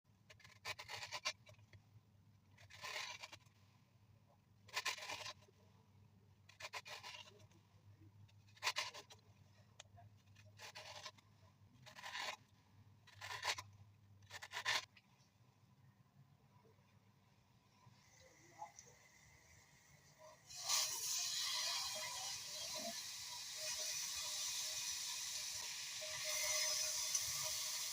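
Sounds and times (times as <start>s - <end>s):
kitchen tool scraping zucchini: 0.3s - 1.4s, 2.6s - 3.5s, 4.7s - 5.4s, 6.5s - 7.5s, 8.5s - 9.2s, 10.4s - 11.2s, 11.8s - 12.4s, 13.1s - 14.9s, 20.5s - 27.9s.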